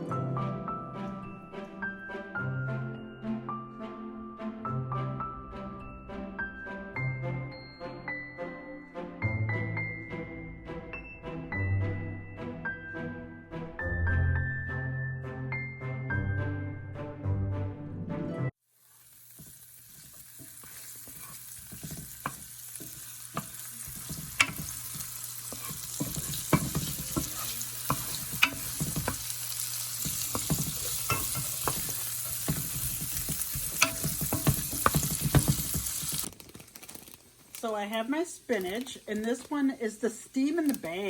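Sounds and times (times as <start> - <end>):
onion and garlic sizzling in a pan: 18.6 - 37.2
utensil knocking and scraping pan: 19.3 - 36.3.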